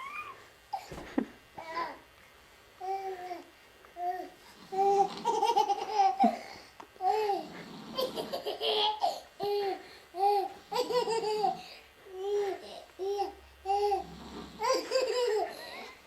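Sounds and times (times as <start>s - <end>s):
woman laughing: 1.0s - 1.4s.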